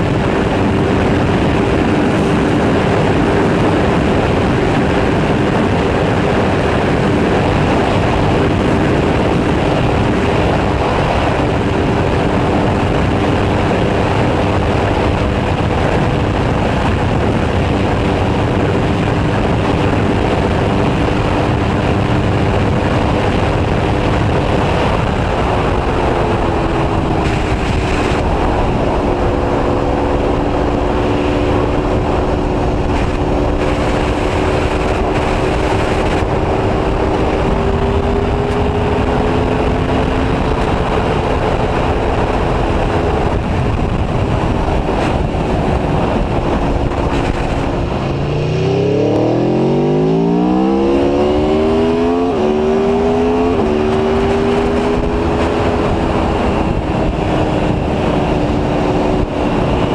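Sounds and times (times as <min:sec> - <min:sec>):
heavy wind noise: 0:00.0 - 0:59.9
motorcycle engine accelerating: 0:00.0 - 0:59.9.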